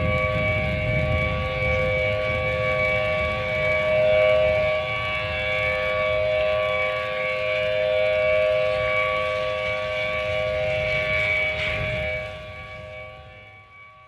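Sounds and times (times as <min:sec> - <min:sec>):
low rumble: 0:00.0 - 0:04.8
emergency warning alarm chord: 0:00.0 - 0:14.0.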